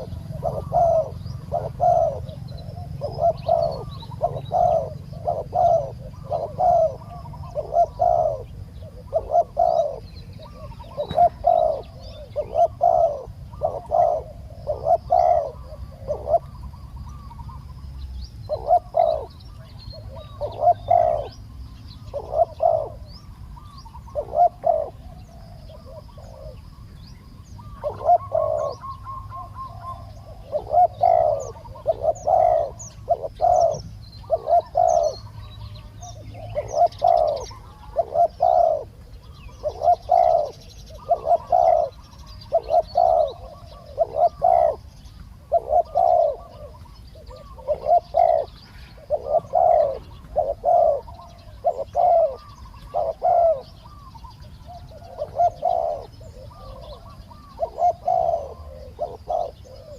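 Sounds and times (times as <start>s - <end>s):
doves cooing: 0.0s - 59.9s
small birds chirping: 0.0s - 59.9s.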